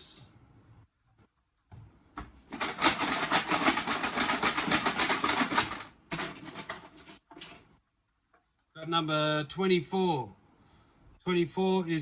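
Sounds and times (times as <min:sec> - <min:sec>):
wooden sticks rattling in bucket: 0:02.5 - 0:07.7.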